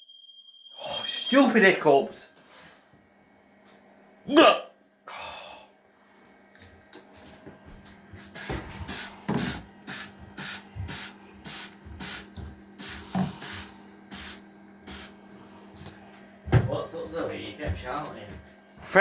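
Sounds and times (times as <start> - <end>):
cleaning spray hissing bursts: 8.3 - 15.2.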